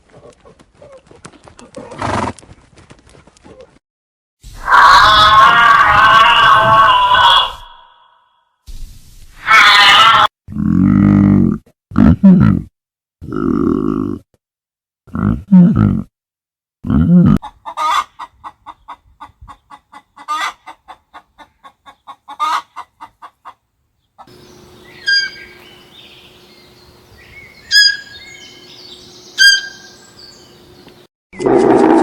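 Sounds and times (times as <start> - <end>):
low grunt: 10.5 - 14.3, 15.1 - 16.1, 16.8 - 17.4
loud bird calls: 24.2 - 31.1
steady low hum: 24.3 - 30.9.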